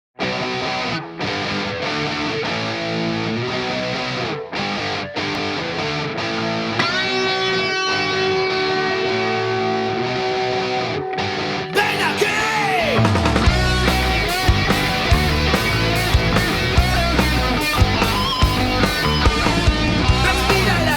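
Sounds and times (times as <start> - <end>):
distorted electric guitars: 0.2 - 20.9
full band playing: 11.8 - 20.9.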